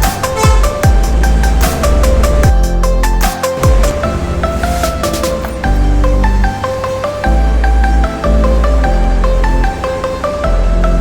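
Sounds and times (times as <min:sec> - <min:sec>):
electronic dance music: 0:00.0 - 0:05.8
synth melody: 0:00.0 - 0:11.0.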